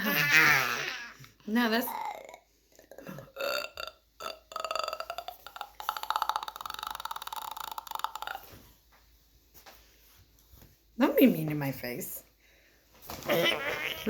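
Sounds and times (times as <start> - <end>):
person burping: 1.8 - 8.6.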